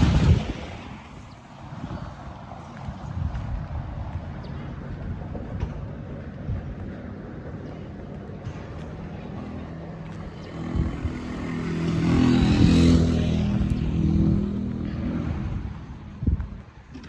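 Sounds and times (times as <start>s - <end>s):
low traffic rumble: 0.0s - 17.0s
vehicle engine passing close: 8.5s - 16.1s.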